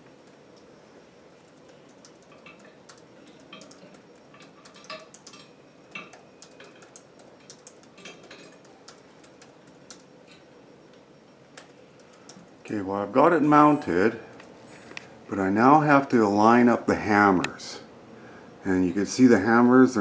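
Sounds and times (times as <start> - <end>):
small hard parts clicking: 1.4 - 10.4.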